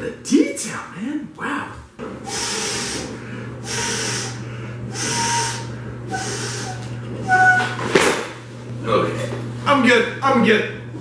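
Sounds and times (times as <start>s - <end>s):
steady low hum: 0.0s - 11.0s
air hissing into inflatable: 2.3s - 7.5s.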